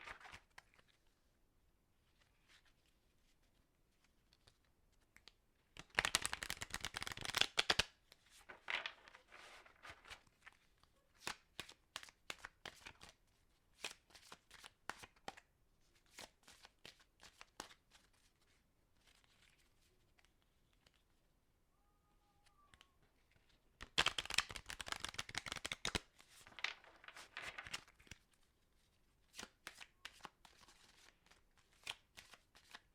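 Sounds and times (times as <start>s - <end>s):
playing cards shuffling: 5.2s - 13.2s, 23.4s - 28.2s, 29.3s - 32.9s.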